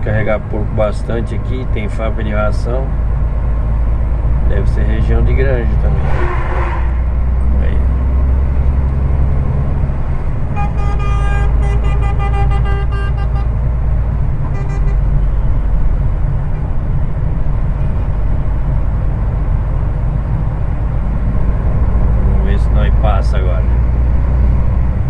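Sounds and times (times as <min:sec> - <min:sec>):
heavy truck engine drone: 0:00.0 - 0:25.0
vehicle horn toots: 0:06.0 - 0:07.0, 0:10.5 - 0:13.6, 0:14.4 - 0:15.3.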